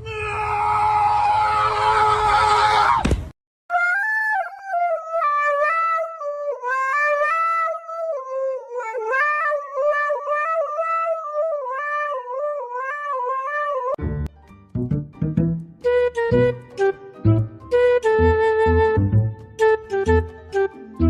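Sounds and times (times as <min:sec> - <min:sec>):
reedy solo melody: 0:14.0 - 0:21.0.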